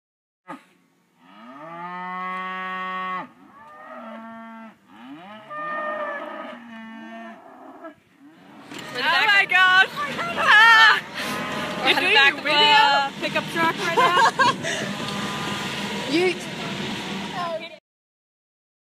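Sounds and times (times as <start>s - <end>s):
cattle mooing: 1.2s - 9.4s, 10.3s - 12.9s, 14.7s - 15.9s.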